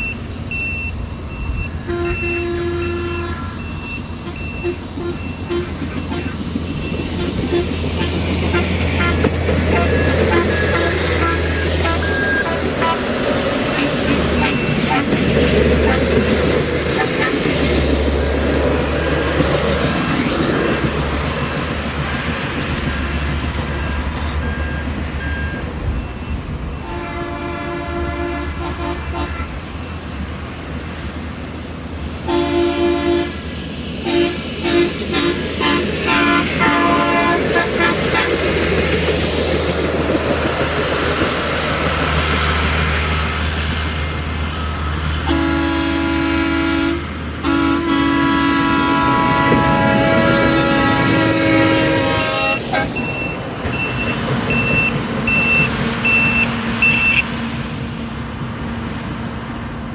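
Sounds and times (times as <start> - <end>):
air horn blasts: 1.8 - 6.4, 7.2 - 15.2, 26.8 - 29.6, 32.2 - 33.4, 34.0 - 38.3, 45.2 - 53.8.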